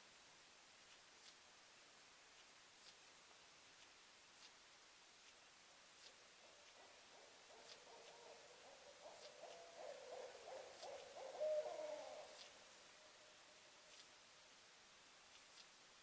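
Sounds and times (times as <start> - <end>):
owl hooting: 6.4 - 14.0.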